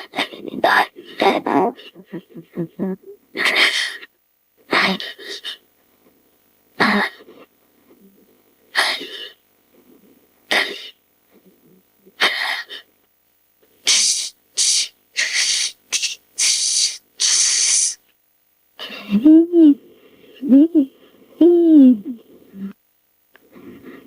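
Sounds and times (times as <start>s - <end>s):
creature hissy bursts: 13.8s - 18.0s.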